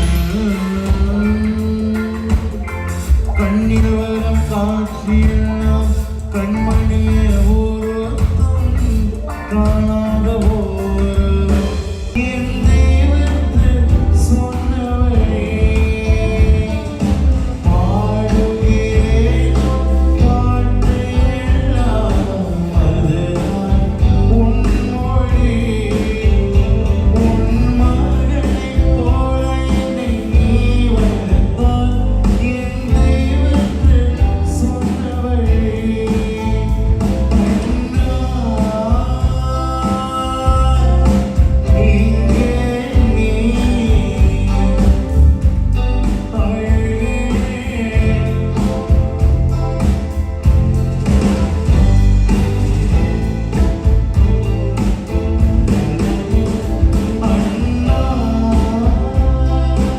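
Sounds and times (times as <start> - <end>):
live band music: 0.0 - 59.9
person singing: 0.0 - 59.9.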